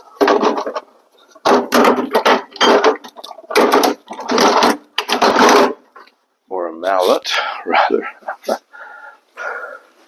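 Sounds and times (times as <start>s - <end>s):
tools clattering: 0.2s - 6.1s.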